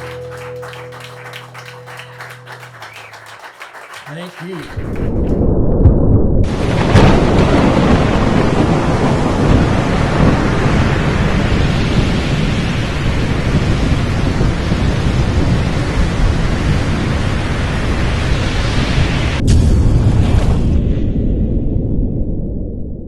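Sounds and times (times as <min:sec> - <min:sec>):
audience applauding: 0:00.0 - 0:05.4.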